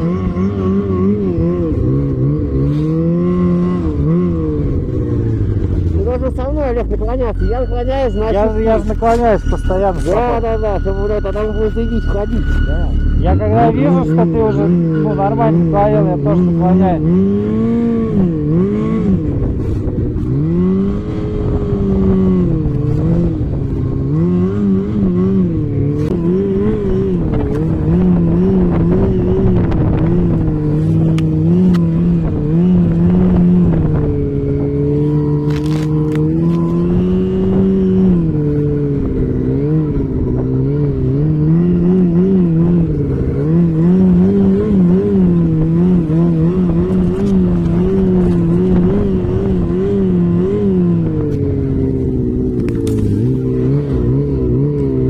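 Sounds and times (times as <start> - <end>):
off-road vehicle engine revving: 0.0 - 55.0.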